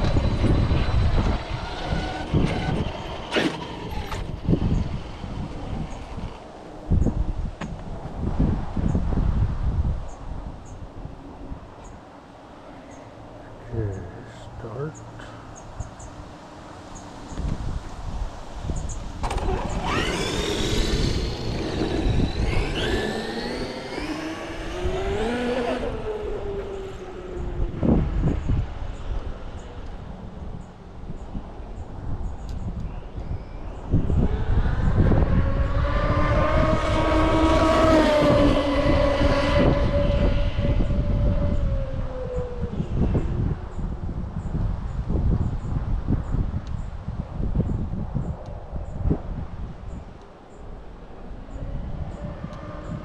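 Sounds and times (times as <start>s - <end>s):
rc car motor whine: 0.0s - 6.4s, 19.2s - 28.4s.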